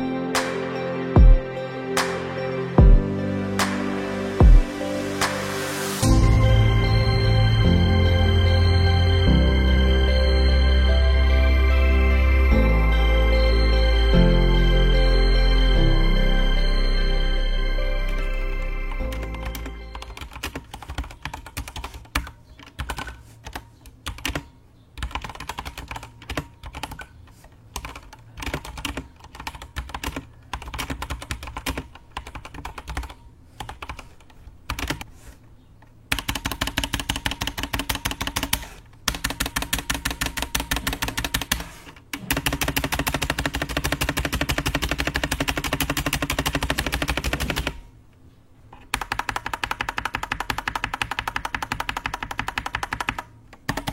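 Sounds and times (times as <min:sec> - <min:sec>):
typing on mechanical keyboard: 0:19.2 - 0:35.1, 0:36.1 - 0:47.8, 0:48.8 - 0:53.9.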